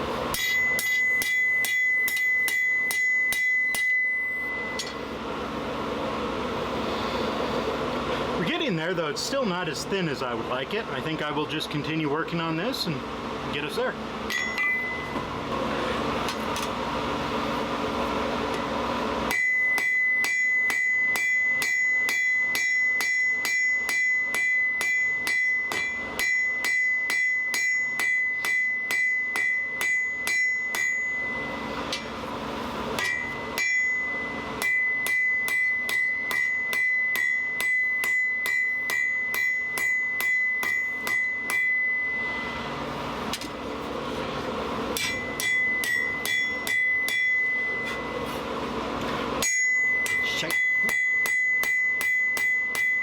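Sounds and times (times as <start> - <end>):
hammer striking steel on anvil: 0.3 - 5.1, 14.3 - 15.3, 18.5 - 43.7, 44.9 - 48.5, 49.4 - 53.0.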